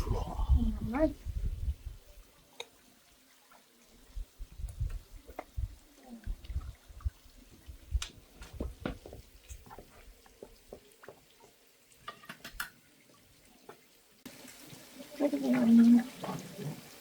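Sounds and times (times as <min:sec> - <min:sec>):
held voice-like tone: 0:00.0 - 0:01.2
water drips: 0:00.0 - 0:17.0.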